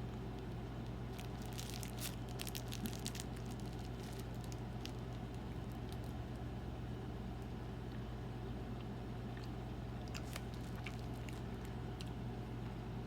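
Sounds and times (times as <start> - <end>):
steady low hum: 0.0 - 13.0
person chewing: 10.1 - 12.1.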